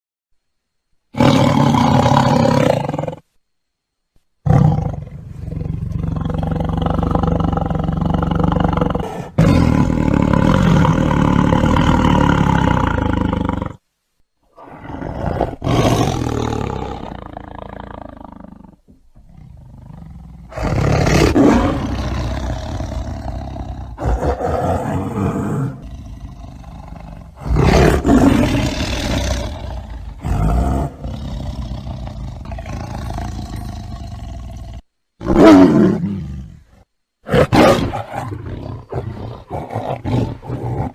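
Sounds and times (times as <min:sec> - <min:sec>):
tiger roaring and growling: 0:01.1 - 0:03.3, 0:04.4 - 0:13.8, 0:14.5 - 0:40.9.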